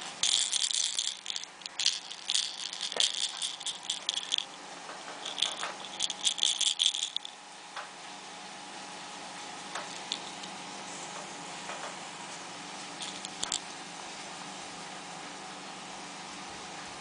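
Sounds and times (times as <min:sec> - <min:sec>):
baby rattle shaken: 0:00.2 - 0:04.6, 0:05.2 - 0:07.3, 0:09.8 - 0:10.5, 0:13.0 - 0:13.6.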